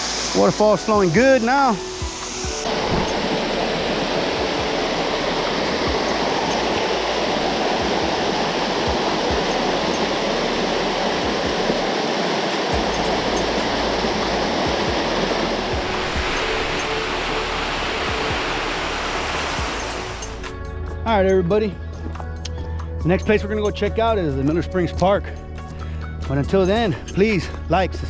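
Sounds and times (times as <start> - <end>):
waterfall roaring: 0.0 - 20.5.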